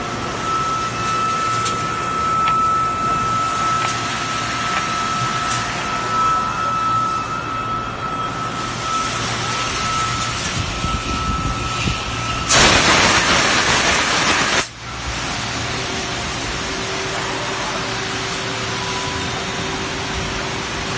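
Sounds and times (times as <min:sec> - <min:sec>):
factory machinery hum: 0:00.0 - 0:20.9
loud burst of hissing: 0:11.6 - 0:18.8.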